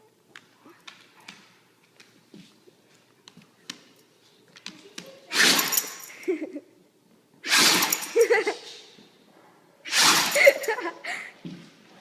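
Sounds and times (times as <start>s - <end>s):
dog sneezing: 5.3s - 6.0s, 7.4s - 8.9s, 9.9s - 10.8s.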